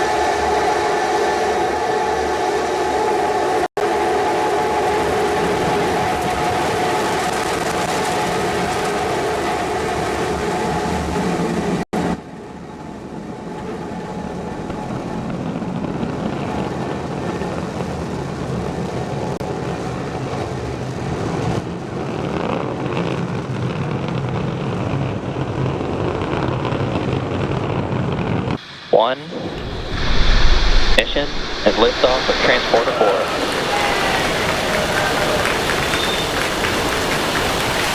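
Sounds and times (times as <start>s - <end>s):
rocket engines rumbling: 0.0s - 37.9s
steady background noise: 27.4s - 37.9s.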